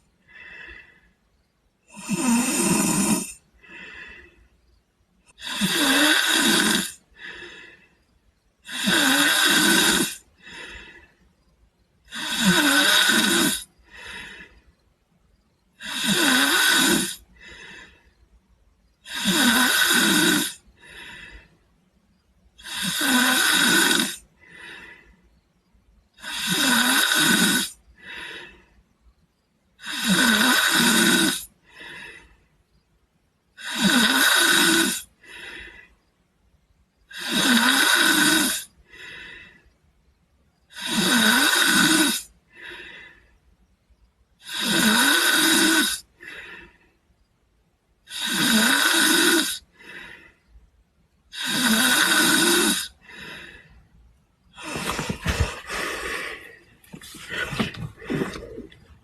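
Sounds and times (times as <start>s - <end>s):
boy snoring: 1.9s - 4.2s, 5.3s - 7.8s, 8.6s - 11.0s, 12.1s - 14.5s, 15.7s - 17.8s, 19.0s - 21.3s, 22.6s - 24.8s, 26.2s - 28.5s, 29.8s - 32.1s, 33.6s - 35.8s, 37.1s - 39.3s, 40.7s - 42.7s, 44.4s - 46.5s, 48.0s - 50.2s, 51.3s - 53.6s, 54.5s - 59.0s
soft breath: 52.9s - 53.9s, 54.5s - 59.0s.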